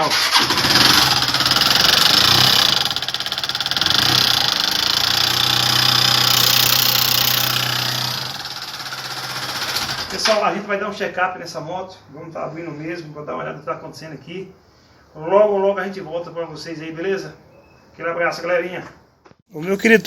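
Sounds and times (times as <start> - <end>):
motorcycle engine rapid clatter: 0.1 - 10.3.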